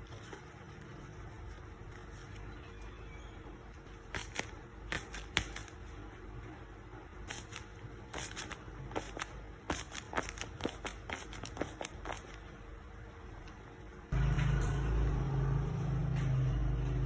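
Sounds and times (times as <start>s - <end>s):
paper rustling: 7.3s - 12.5s.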